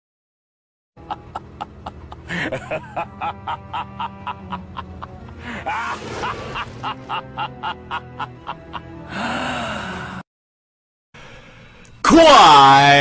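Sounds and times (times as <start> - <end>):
comedic music with clicking beat: 1.0 - 9.0.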